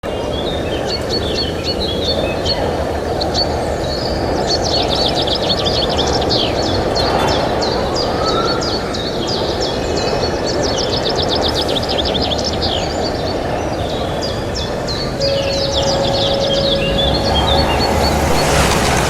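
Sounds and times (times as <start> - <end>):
birds chirping: 9.2 - 19.0
low rumbling noise: 14.0 - 19.0.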